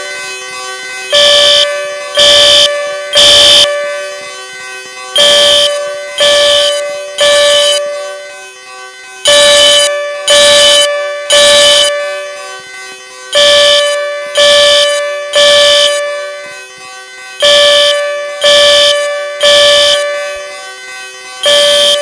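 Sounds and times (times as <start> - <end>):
fire alarm horn buzzing: 0.0 - 22.0.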